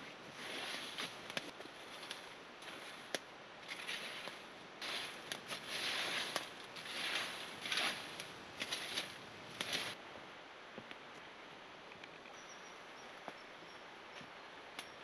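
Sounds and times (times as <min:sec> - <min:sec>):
rustling and scraping: 0:00.0 - 0:10.0.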